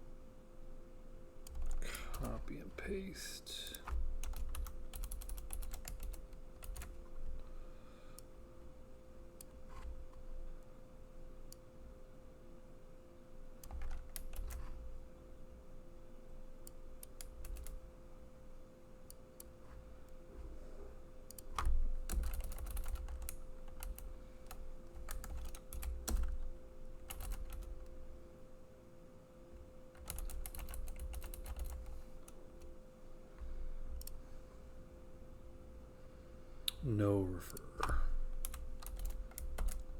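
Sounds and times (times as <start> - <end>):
faint steady hum: 0.0 - 39.9
typing on computer keyboard: 1.4 - 2.4, 3.7 - 7.2, 13.6 - 14.7, 17.0 - 17.8, 21.3 - 27.9, 30.0 - 32.4, 37.8 - 39.9.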